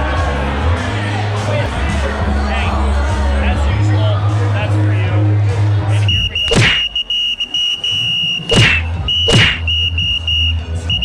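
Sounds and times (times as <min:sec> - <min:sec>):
sharp whacks: 0:06.5 - 0:07.0, 0:08.5 - 0:09.7.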